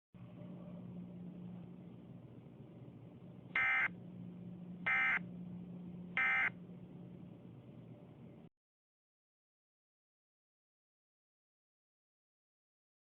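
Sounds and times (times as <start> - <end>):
faint low hum: 0.2 - 8.5.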